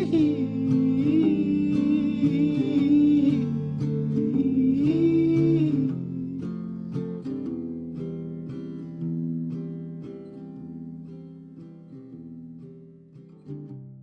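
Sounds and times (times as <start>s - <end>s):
person singing: 0.0s - 7.4s
acoustic guitar strumming: 0.0s - 13.9s.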